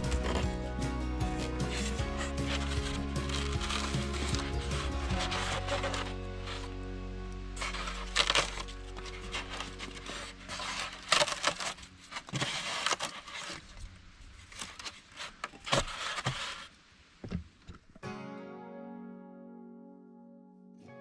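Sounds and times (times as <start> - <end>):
scraping and rubbing: 0.0 - 6.8, 7.6 - 16.8
background music: 0.0 - 11.9.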